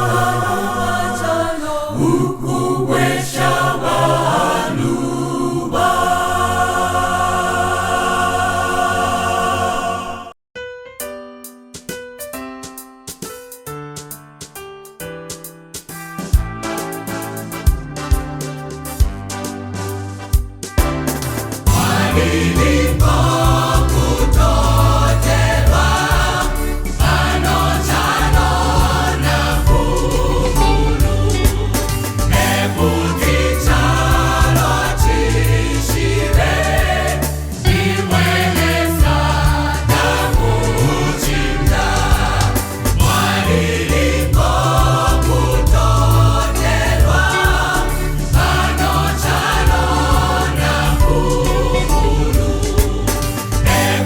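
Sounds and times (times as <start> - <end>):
choir singing in harmony: 0.0 - 10.4, 21.4 - 54.0
steady drum beat: 15.8 - 19.4, 20.2 - 54.0
bass accompaniment: 16.3 - 54.0.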